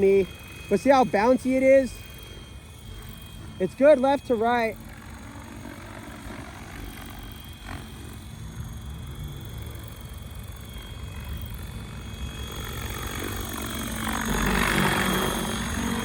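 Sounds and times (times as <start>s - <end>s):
helicopter motor whine: 0.0s - 16.0s
rotor noise: 0.0s - 16.0s.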